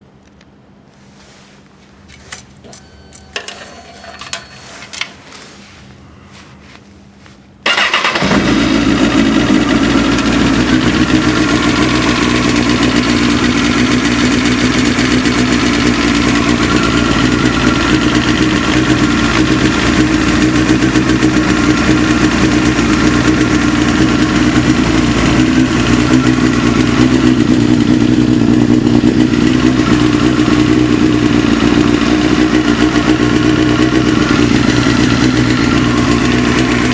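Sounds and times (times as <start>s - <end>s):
motorcycle engine starting and idling: 2.1s - 5.4s, 7.6s - 36.9s
engine knock: 8.6s - 36.9s.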